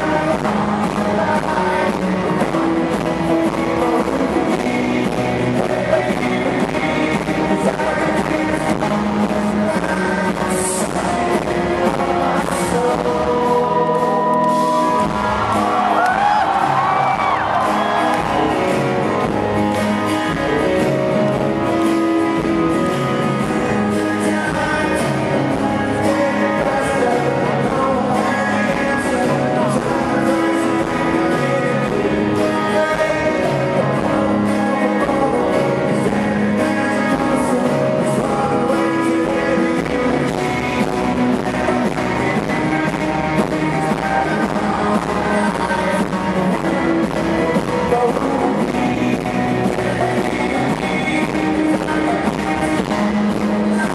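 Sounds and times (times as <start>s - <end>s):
electric guitars: 0.0s - 53.9s
live rock band playing: 0.0s - 53.9s
man singing: 0.0s - 53.9s.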